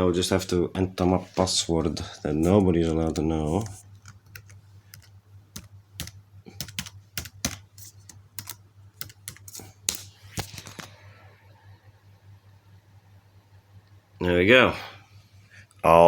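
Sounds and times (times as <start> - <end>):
low steady hum: 0.0 - 16.0
laptop keyboard typing: 2.4 - 10.8.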